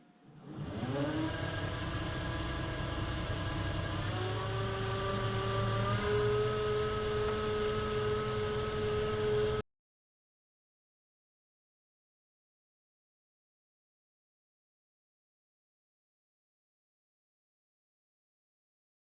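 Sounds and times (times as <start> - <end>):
wood lathe motor whining: 0.5 - 9.6.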